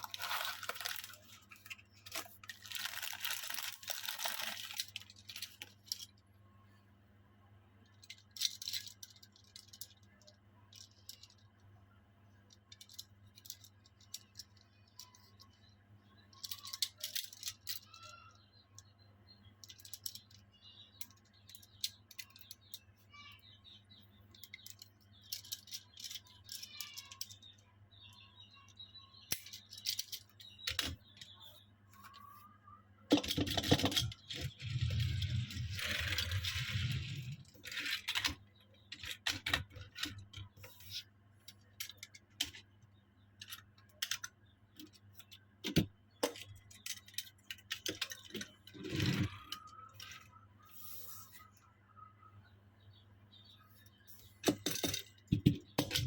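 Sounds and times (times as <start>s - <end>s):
toy cars clicking and rattling: 0.0s - 6.2s, 7.8s - 11.6s, 12.5s - 15.7s, 16.3s - 18.9s, 19.6s - 23.4s, 24.3s - 27.6s, 28.6s - 31.4s, 33.1s - 42.7s, 43.4s - 50.4s, 54.4s - 56.0s.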